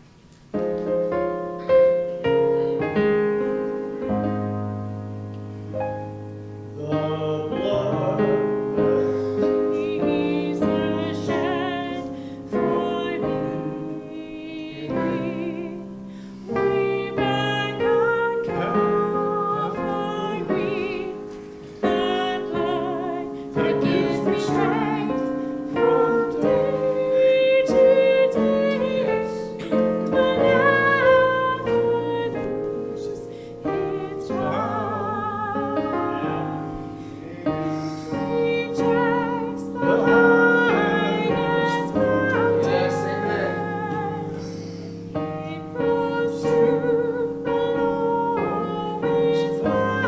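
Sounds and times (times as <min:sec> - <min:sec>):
piano chords: 0:00.0 - 0:50.0
person singing with vibrato: 0:06.1 - 0:50.0.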